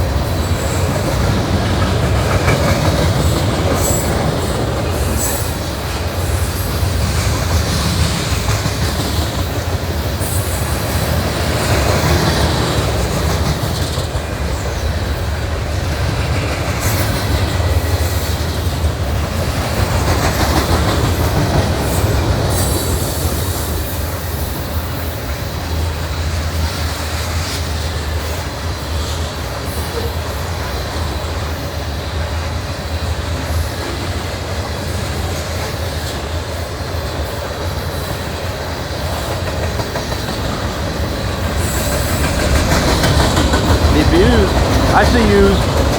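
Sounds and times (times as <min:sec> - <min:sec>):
wheels clacking over rails: 0:00.0 - 0:23.9, 0:37.4 - 0:45.9
freight train rumbling past: 0:00.0 - 0:45.9.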